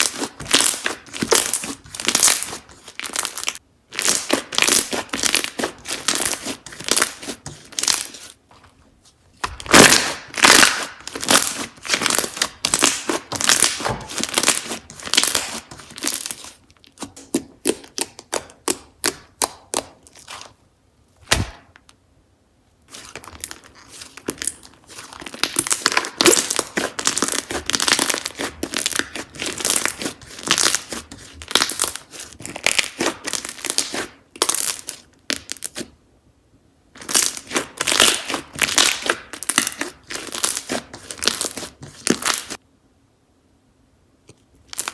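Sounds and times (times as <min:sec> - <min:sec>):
slime crackling and popping: 0:00.0 - 0:08.3, 0:09.4 - 0:20.5, 0:22.9 - 0:35.9, 0:37.0 - 0:42.6, 0:44.6 - 0:44.9.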